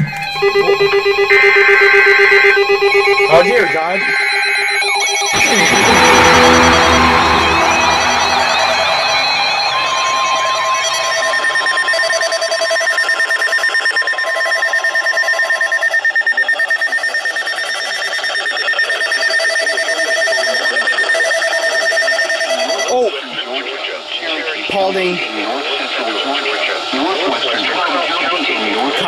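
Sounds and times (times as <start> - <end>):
steady beep tone: 0.0 - 23.1
fast-pulsing electronic alarm tone: 0.0 - 24.0.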